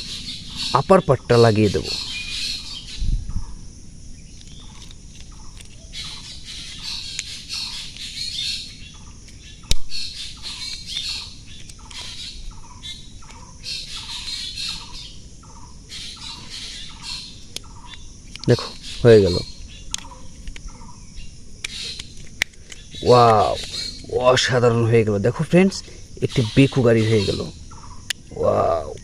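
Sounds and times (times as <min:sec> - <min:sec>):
birds chirping: 0:00.0 - 0:29.0.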